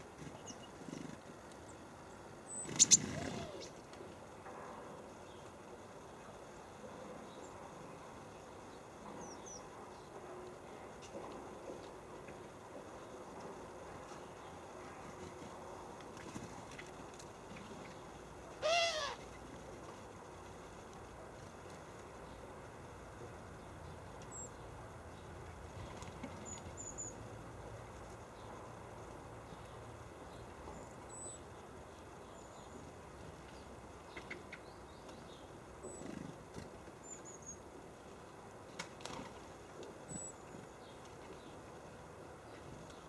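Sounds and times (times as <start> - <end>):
small birds high calls: 2.5 - 3.8, 18.6 - 19.4.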